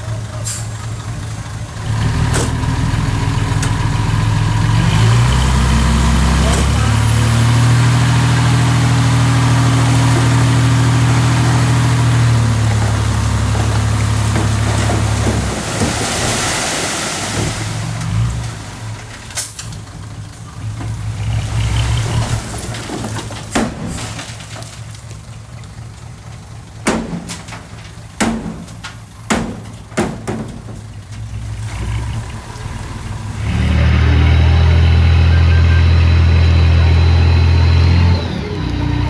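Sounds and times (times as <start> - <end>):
heavy diesel machinery running: 0.0 - 39.0
sharp metal knocks and clanks: 26.8 - 31.5.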